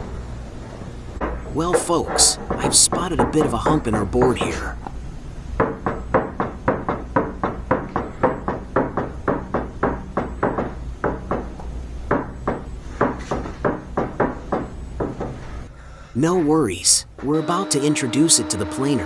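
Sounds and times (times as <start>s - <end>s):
wooden board knocking on surface: 1.2s - 4.8s.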